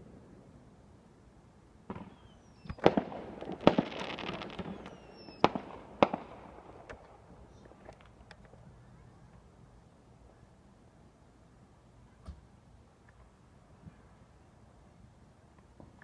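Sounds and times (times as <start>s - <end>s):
firework bangs: 1.9s - 7.0s
faint firework pops: 1.9s - 7.1s
fireworks crackling: 1.9s - 8.3s
falling firework whistles: 2.0s - 3.0s, 3.6s - 5.6s.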